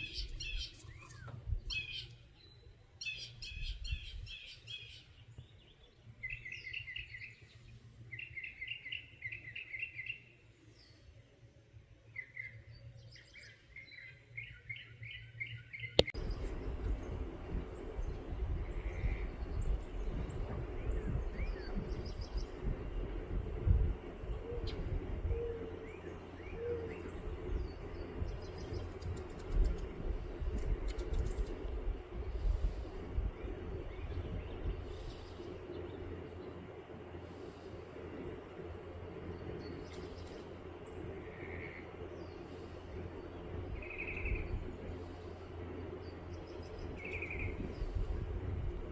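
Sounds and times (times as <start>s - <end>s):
low rumble: 16.2s - 36.9s
bird cooing: 24.3s - 27.3s.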